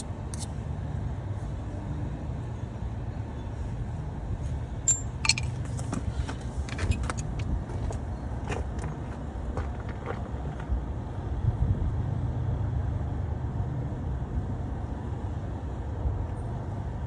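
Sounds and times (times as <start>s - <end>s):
steady low rumble: 3.7s - 12.2s
metallic clinks of tools: 4.9s - 6.0s.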